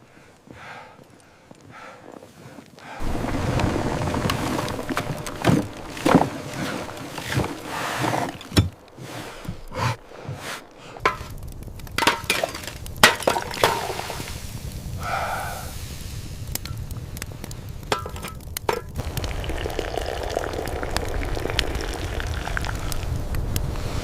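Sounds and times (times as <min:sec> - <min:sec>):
sharp knocks and cracks: 0:11.0 - 0:14.1, 0:17.4 - 0:19.0.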